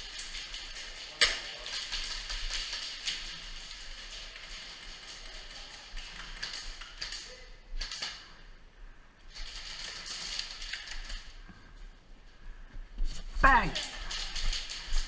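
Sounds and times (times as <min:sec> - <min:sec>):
airsoft gun rapid clicking: 0:13.8 - 0:15.0.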